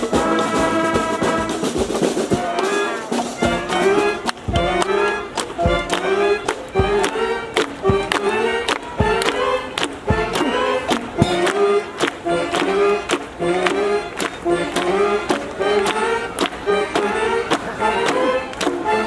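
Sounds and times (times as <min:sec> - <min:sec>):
brass horn melody: 0:00.0 - 0:19.0
steady drum beat: 0:00.0 - 0:19.0.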